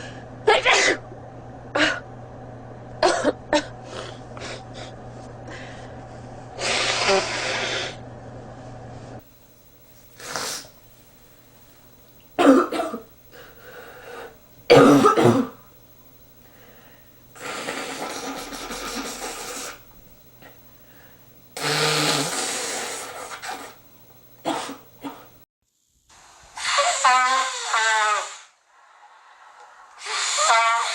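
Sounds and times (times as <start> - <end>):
man blowing his nose: 6.6 - 8.0, 10.2 - 10.7, 17.4 - 19.8, 21.6 - 23.8, 30.0 - 30.9
short snorts: 6.6 - 8.0, 10.2 - 10.8, 17.4 - 20.6, 21.6 - 23.8, 30.0 - 30.9.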